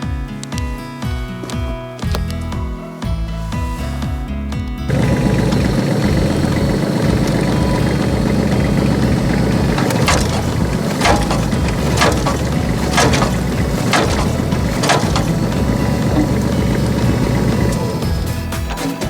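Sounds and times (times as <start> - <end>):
sharp knocking from rotary implement: 4.9 - 19.0
tractor engine running: 4.9 - 19.0.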